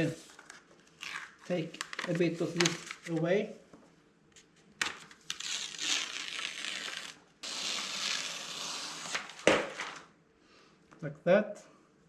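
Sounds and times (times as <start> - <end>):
tape liner peeling off crackling: 4.4 - 10.1.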